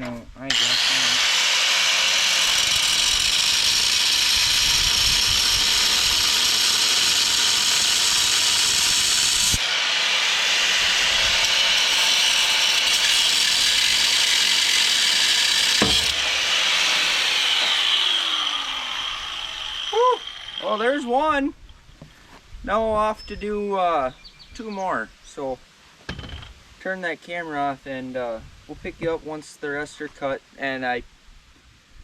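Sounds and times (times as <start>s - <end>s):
angle grinder cutting steel: 0.5s - 21.3s.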